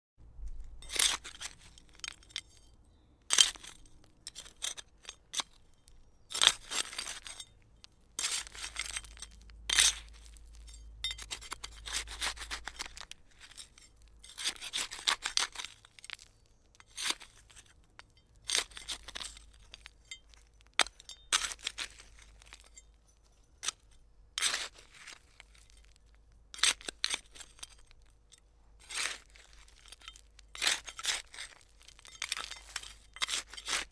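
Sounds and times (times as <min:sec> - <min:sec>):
trowel scraping through soil: 0:00.4 - 0:07.5, 0:08.2 - 0:17.7, 0:18.4 - 0:22.8, 0:28.8 - 0:33.9.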